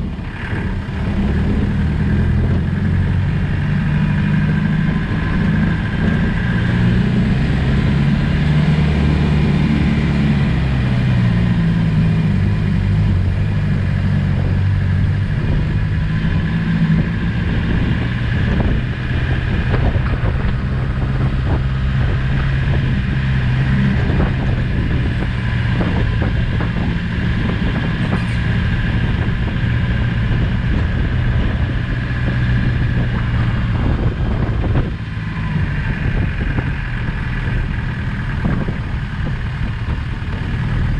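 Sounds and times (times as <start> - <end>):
diesel engine revving: 0.0 - 40.9
steady high whine: 0.0 - 40.9.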